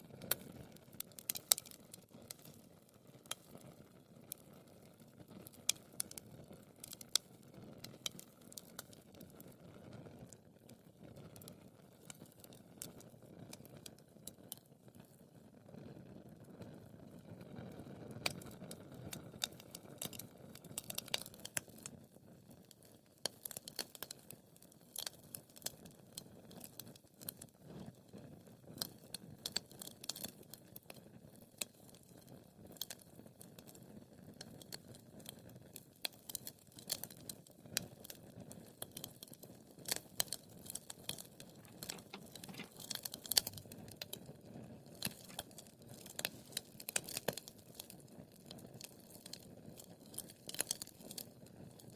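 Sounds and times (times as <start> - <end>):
wood fire crackling: 0.1 - 9.6, 10.2 - 15.3, 17.6 - 51.9
low rumble of flames: 39.6 - 51.7.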